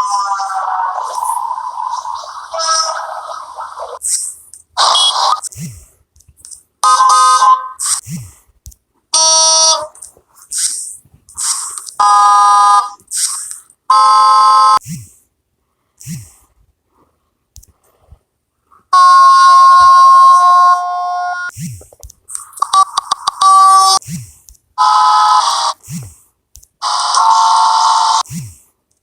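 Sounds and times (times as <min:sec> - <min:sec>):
hissing bursts: 0:10.5 - 0:11.9.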